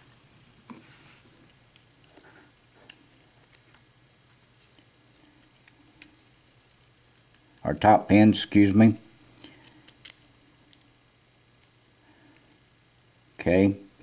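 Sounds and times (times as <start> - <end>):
small metal clicks: 9.4 - 10.9.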